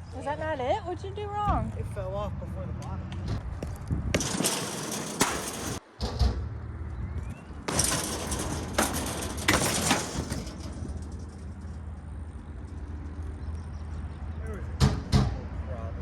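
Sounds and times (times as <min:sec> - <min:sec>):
bike tyres rolling on hard ground: 0:03.1 - 0:14.4
sharp knocks from bike: 0:03.6 - 0:06.5, 0:07.7 - 0:11.5.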